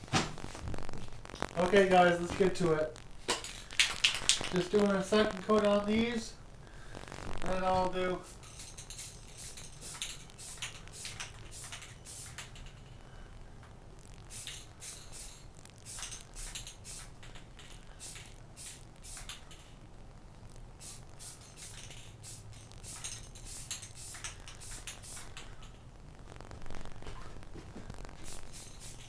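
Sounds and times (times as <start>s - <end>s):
spray-paint can hissing: 8.2s - 12.7s, 14.3s - 17.4s, 18.0s - 19.7s, 20.8s - 25.4s, 28.2s - 29.0s.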